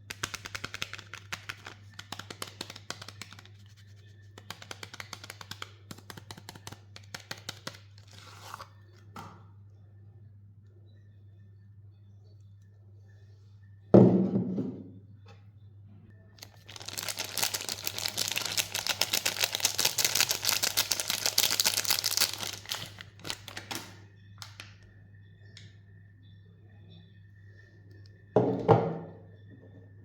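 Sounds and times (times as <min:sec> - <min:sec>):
wrapping crinkling: 0:16.4 - 0:24.6.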